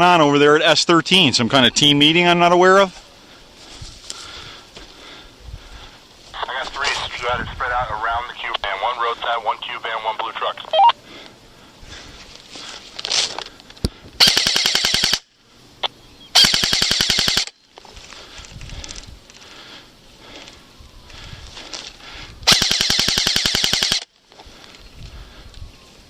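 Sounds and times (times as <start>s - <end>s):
airsoft gun firing bursts: 14.2s - 15.3s, 16.4s - 17.5s, 22.5s - 24.1s.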